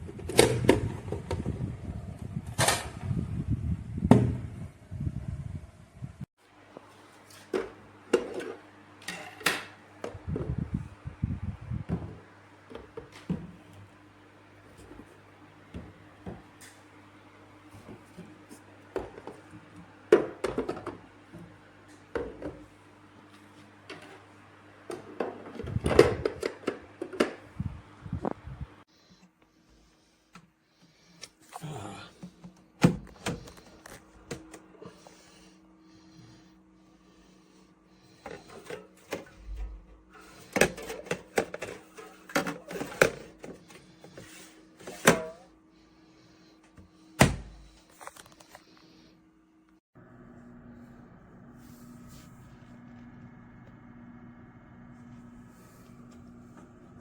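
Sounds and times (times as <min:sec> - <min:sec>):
low hum of cooling fan: 0:00.0 - 0:06.3, 0:07.5 - 0:29.2, 0:29.8 - 0:57.0
objects knocking and clunking: 0:18.9 - 0:21.1.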